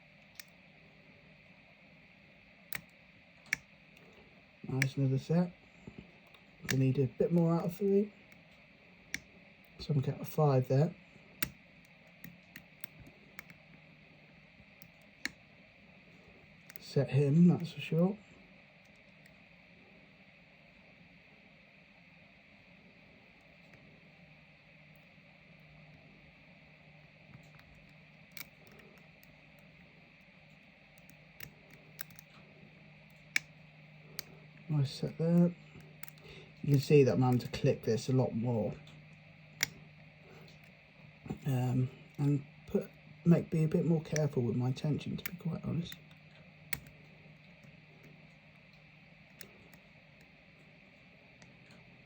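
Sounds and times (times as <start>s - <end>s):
faint lock pick clicks: 27.3s - 29.7s, 30.9s - 32.4s, 35.8s - 37.5s, 45.2s - 47.0s.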